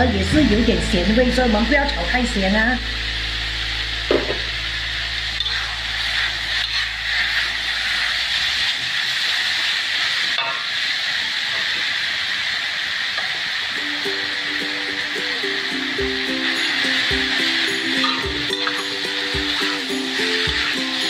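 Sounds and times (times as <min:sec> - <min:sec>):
low hum: 0:00.0 - 0:08.7
vegetables sizzling in hot oil: 0:00.0 - 0:21.0.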